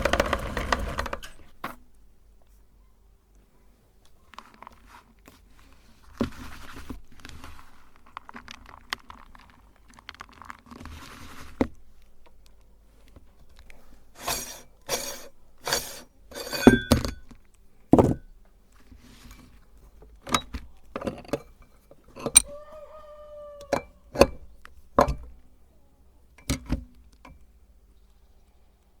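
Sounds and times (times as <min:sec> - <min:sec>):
faint crunching and crackling: 0:00.0 - 0:23.3
clinks and knocks: 0:14.2 - 0:17.3, 0:20.3 - 0:22.5
short squeak: 0:22.2 - 0:22.6.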